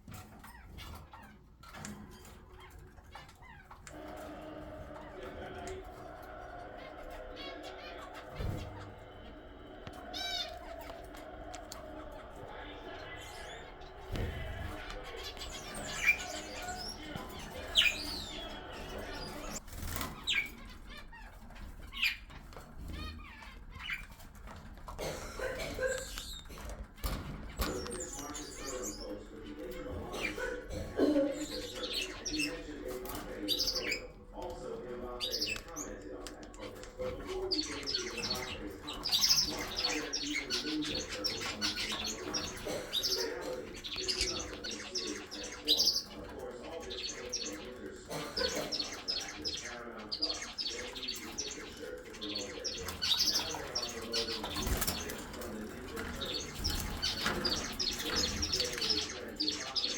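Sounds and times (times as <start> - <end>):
parrot rapid chatter: 0.0 - 29.1
parrots shrieking: 0.0 - 32.8
wings flapping: 3.9 - 29.0, 52.1 - 59.4.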